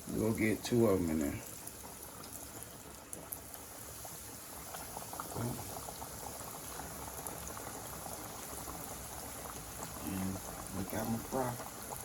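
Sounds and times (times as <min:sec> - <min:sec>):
chicken deep-frying in oil: 0:00.0 - 0:12.0.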